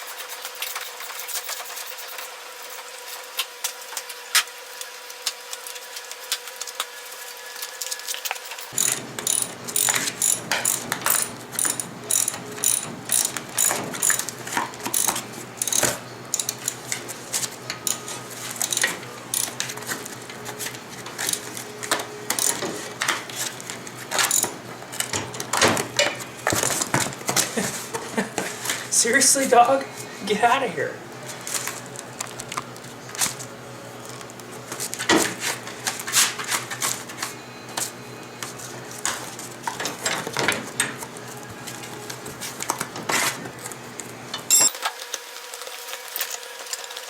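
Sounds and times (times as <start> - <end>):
socket ratchet clicking: 8.8 - 14.3, 14.9 - 16.6.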